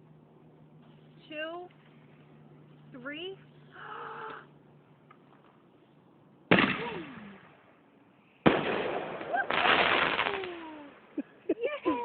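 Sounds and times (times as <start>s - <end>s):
firework bangs: 6.5s - 7.6s, 8.4s - 11.0s
firework crackling burst: 8.4s - 11.0s.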